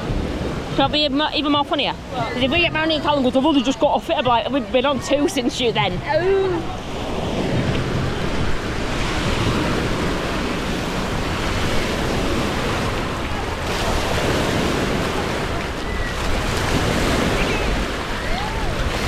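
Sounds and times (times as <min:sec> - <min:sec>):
water splashing: 0:00.0 - 0:19.0
faint voices: 0:01.9 - 0:08.7, 0:12.8 - 0:19.0.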